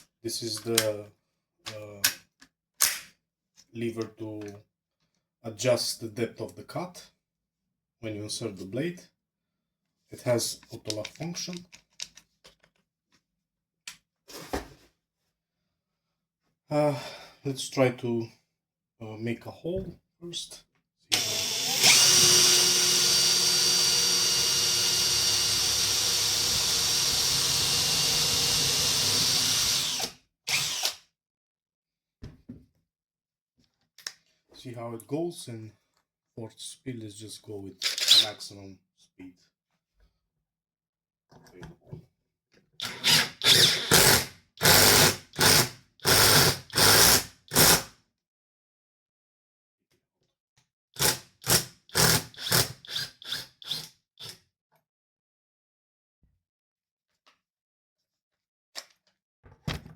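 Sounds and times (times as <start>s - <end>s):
cordless drill motor whine: 21.1s - 30.9s, 42.8s - 45.6s.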